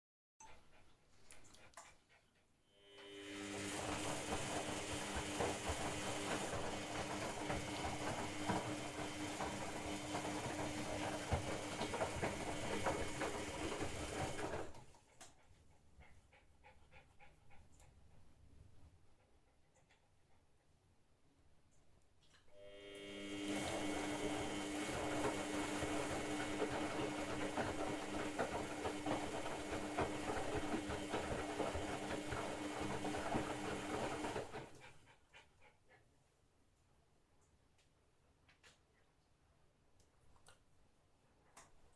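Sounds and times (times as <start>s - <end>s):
washing machine hum: 2.8s - 15.0s, 22.6s - 35.1s
running water in washing machine: 3.1s - 14.8s, 22.7s - 34.9s.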